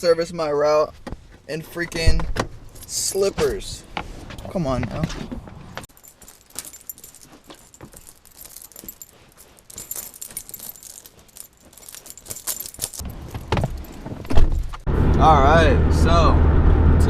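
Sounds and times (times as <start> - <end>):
keys jangling: 2.7 - 3.8, 5.9 - 14.8.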